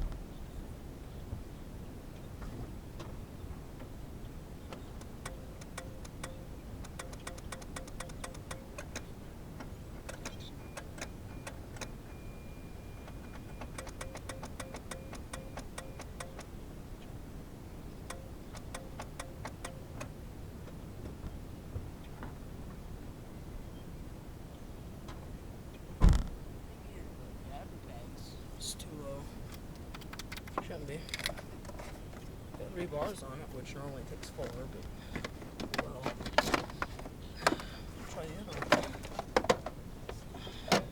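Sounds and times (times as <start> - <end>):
starter solenoid clicking rapidly: 5.0 - 9.1.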